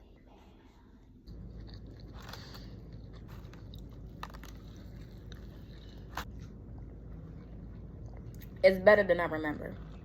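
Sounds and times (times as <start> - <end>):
steady low hum: 0.0 - 10.0
chewing food close-up: 1.2 - 8.6, 9.5 - 10.0.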